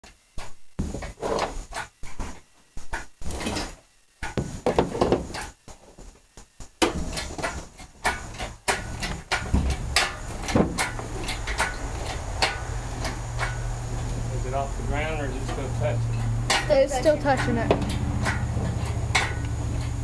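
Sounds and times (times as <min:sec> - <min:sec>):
metal clunks and rattles: 0:06.8 - 0:14.3, 0:15.0 - 0:20.0.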